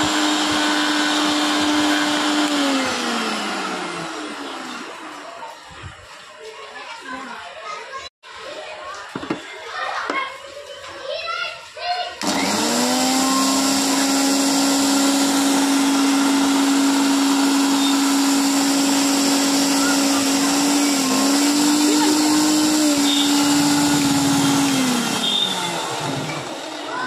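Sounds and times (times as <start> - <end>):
small electric motor whining: 0.0 - 4.7, 12.2 - 26.9.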